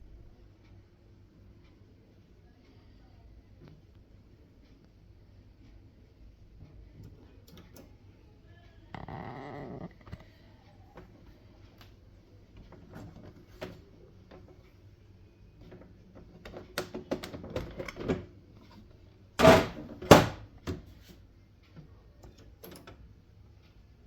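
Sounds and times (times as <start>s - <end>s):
printer plastic clicks and knocks: 15.8s - 18.3s.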